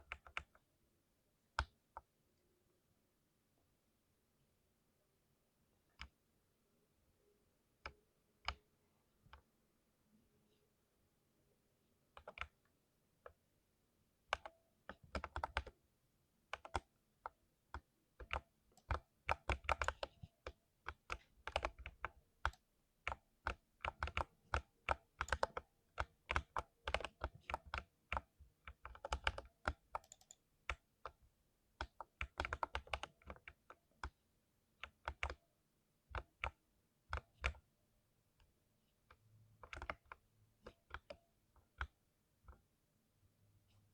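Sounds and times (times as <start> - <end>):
mechanical keyboard typing: 0.0 - 0.6, 14.3 - 15.7, 16.5 - 31.2, 31.8 - 34.2, 34.8 - 35.4, 39.6 - 42.6.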